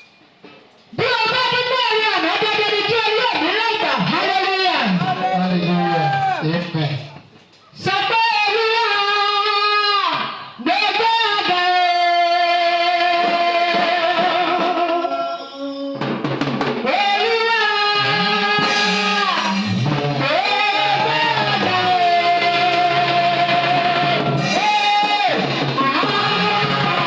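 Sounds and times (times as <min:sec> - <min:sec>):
gospel band playing: 0:11.6 - 0:27.0
bass and drums: 0:16.0 - 0:27.0.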